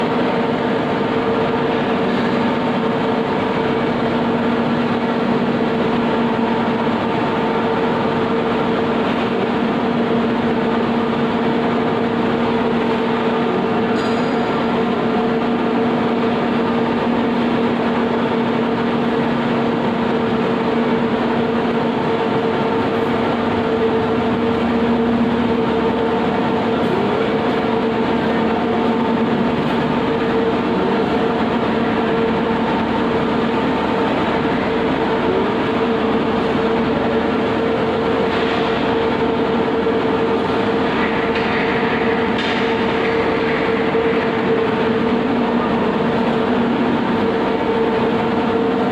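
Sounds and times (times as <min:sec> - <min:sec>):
grinding machine running: 0:00.0 - 0:48.9.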